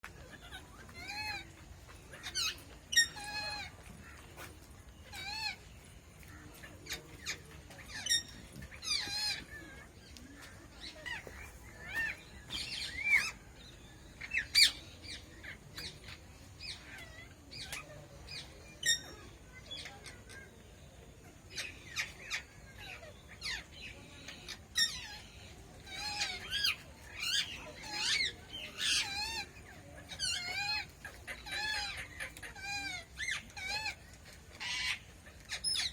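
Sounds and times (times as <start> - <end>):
parakeets squawking: 0.2 - 4.5, 10.8 - 13.4, 21.5 - 35.9.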